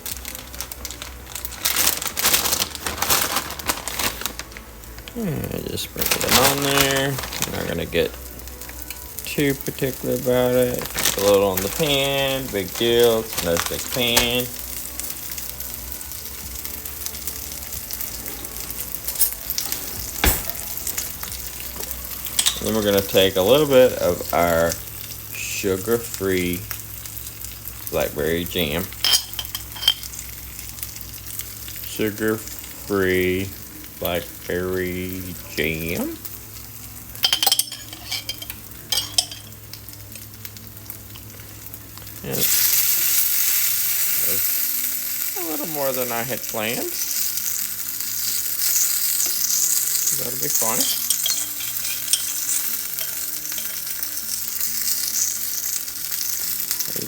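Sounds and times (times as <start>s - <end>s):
food sizzling in a frying pan: 0.0s - 57.0s
utensil clinking against pan: 22.3s - 22.9s, 29.0s - 30.1s, 37.2s - 39.6s, 50.4s - 54.1s.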